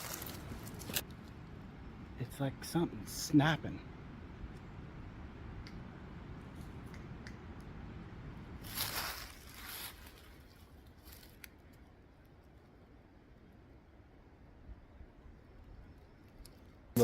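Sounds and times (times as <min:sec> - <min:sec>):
rustling crunches: 0:00.0 - 0:01.0, 0:08.6 - 0:11.6.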